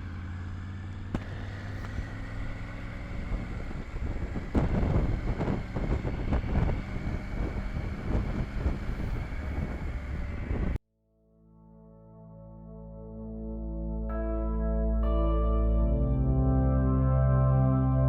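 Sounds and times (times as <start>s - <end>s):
motorcycle engine at low revs: 0.0s - 10.8s
wind buffeting microphone: 3.0s - 10.8s.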